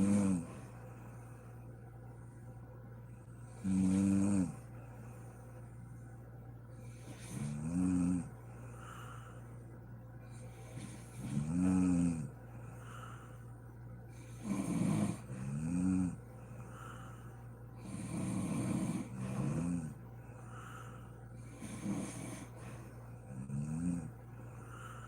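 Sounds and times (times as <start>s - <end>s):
woman snoring: 0.0s - 0.6s, 3.5s - 4.6s, 7.0s - 9.2s, 10.8s - 12.4s, 14.2s - 16.2s, 17.8s - 22.6s, 23.3s - 24.1s
steady low hum: 0.0s - 25.0s.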